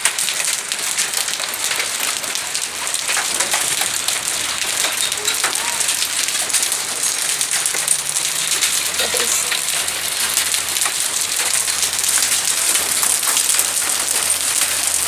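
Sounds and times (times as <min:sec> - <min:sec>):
hail falling: 0:00.0 - 0:15.0.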